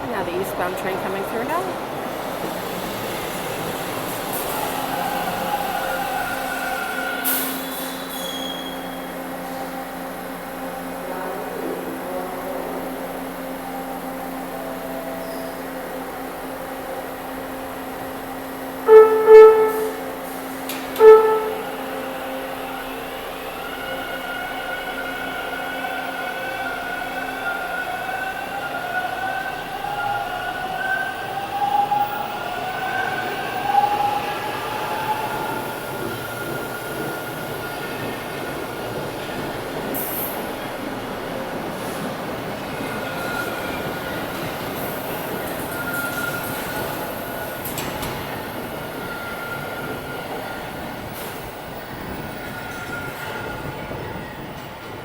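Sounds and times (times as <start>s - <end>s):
subway train horn blasts: 0.0s - 54.6s
train wheel squeal: 4.3s - 9.2s, 20.7s - 21.8s, 42.8s - 54.6s.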